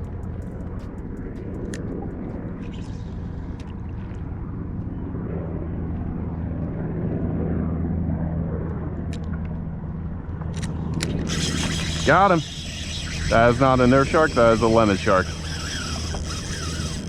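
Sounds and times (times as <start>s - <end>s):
low engine drone: 0.0s - 17.0s.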